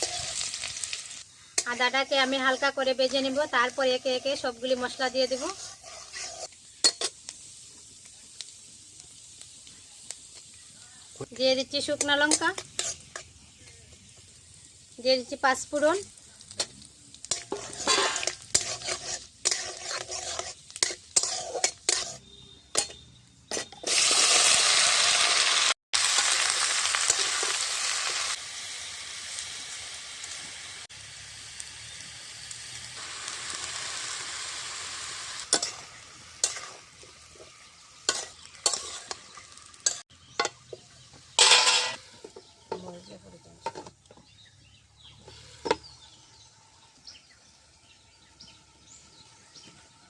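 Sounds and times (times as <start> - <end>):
stirring and scraping in a pan: 0.0 - 14.6, 15.5 - 24.5, 26.9 - 28.4, 34.6 - 47.1
spices sizzling in hot oil: 0.0 - 50.0.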